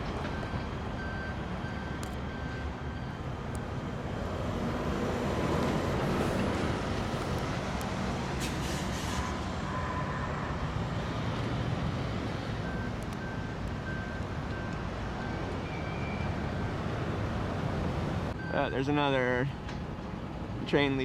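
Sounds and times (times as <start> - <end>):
road traffic: 0.0 - 21.0
faint high beeping: 18.4 - 19.4.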